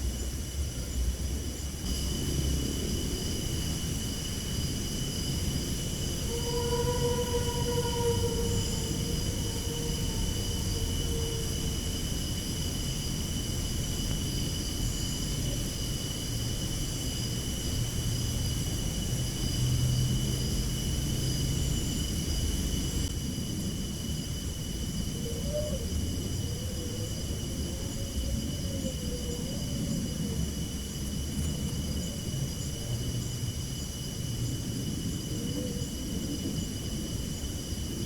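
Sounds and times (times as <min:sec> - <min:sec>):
high-pitched whines: 0:05.3 - 0:12.4
faint wavering tone: 0:06.2 - 0:12.0.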